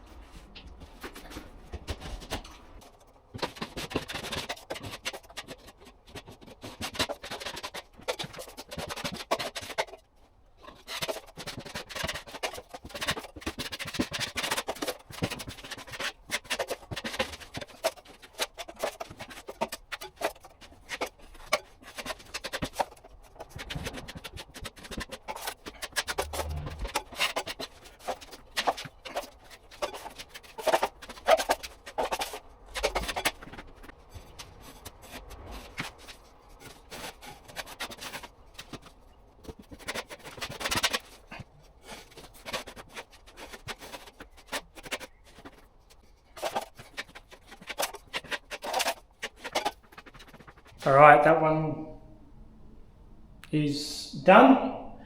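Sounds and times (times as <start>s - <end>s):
plastering knife scraping: 10.6s - 50.8s.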